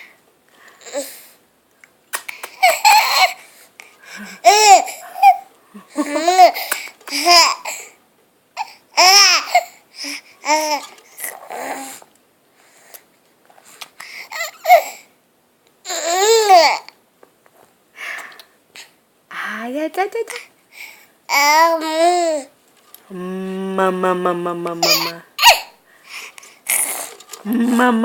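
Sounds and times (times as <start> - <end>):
baby squealing: 24.8 - 25.8.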